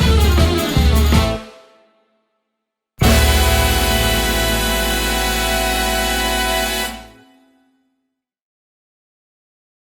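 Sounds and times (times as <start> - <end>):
carnival song held final chord: 3.0 - 7.6.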